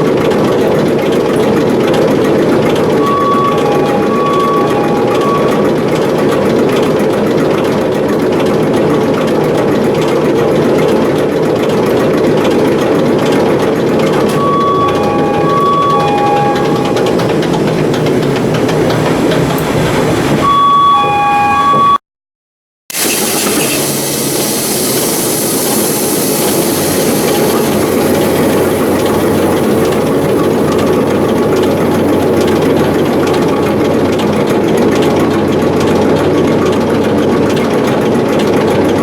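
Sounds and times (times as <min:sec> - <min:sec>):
diesel engine running loudly: 0:00.0 - 0:20.5, 0:23.0 - 0:39.0
two-tone electronic alarm beeping: 0:02.9 - 0:06.4, 0:14.3 - 0:19.4, 0:20.4 - 0:22.0, 0:26.2 - 0:34.0.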